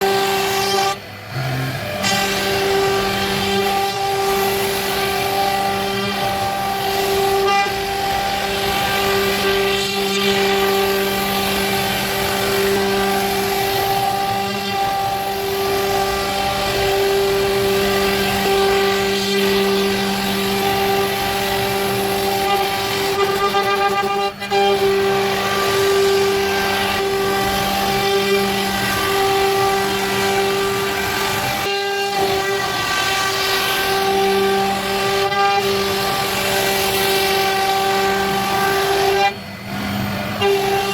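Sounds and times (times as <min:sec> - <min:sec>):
router spindle whining: 0:00.0 - 0:40.9.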